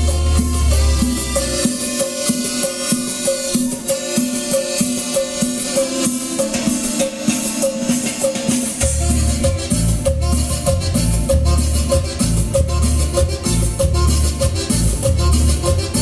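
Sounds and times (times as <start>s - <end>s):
deep bass: 0.0s - 1.6s, 8.8s - 16.0s
latin dance music: 0.0s - 16.0s.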